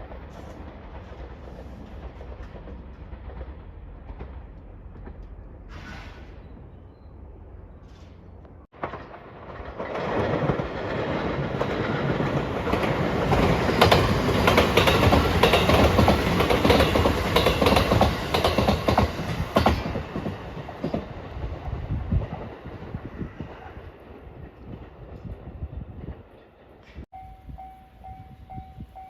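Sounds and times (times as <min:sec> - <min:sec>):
passenger train passing: 0:00.0 - 0:29.0
wheel clacks over rail joints: 0:07.8 - 0:21.2.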